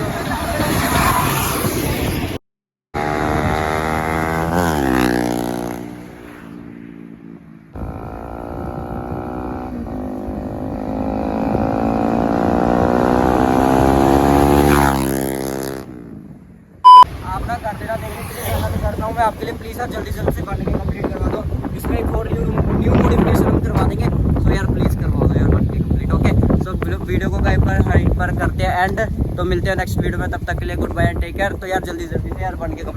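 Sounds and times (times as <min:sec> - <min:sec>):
motorcycle exhaust passing by: 0:03.0 - 0:16.6.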